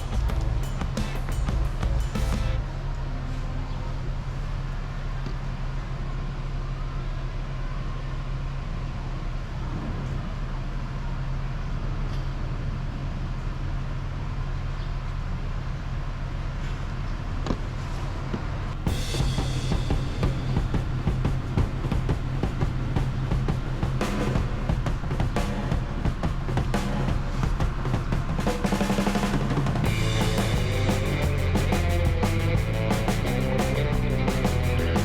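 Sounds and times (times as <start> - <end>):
scooter engine idling: 18.9 - 35.0.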